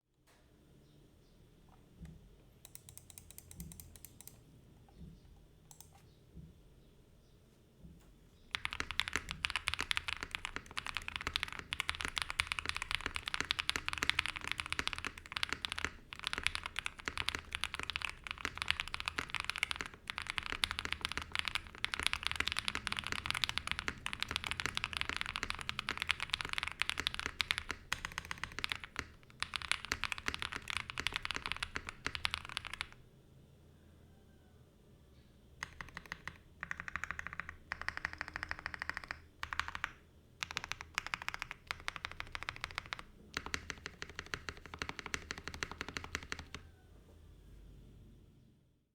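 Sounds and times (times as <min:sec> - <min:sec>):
fast typing on mechanical keyboard: 0:02.7 - 0:04.4, 0:08.5 - 0:33.0, 0:35.6 - 0:46.7.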